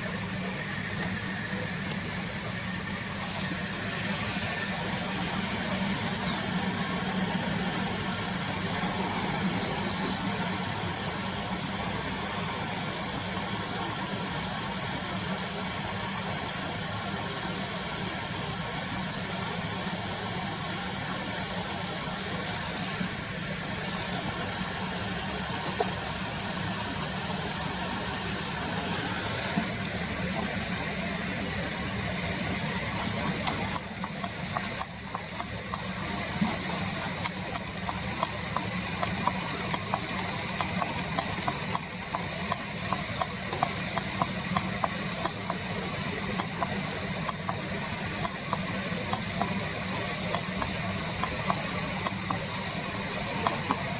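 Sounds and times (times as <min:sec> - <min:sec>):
constant hiss: 0:00.0 - 0:53.9
car engine idling: 0:24.4 - 0:53.9.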